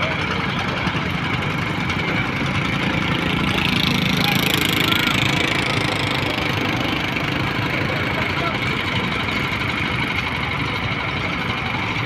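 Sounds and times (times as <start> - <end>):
boat engine pulsing: 0.0 - 12.0.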